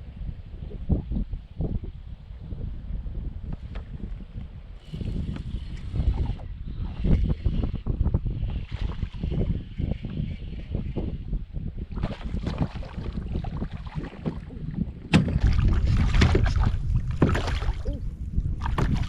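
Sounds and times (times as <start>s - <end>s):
wind rumbling on microphone: 0.0s - 19.0s
handling knocks and clatter in kayak: 12.0s - 17.9s, 18.6s - 19.0s.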